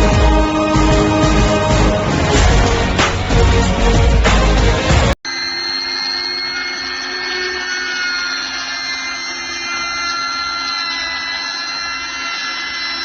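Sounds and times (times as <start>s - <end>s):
electric trimmer motor whining: 5.3s - 13.0s.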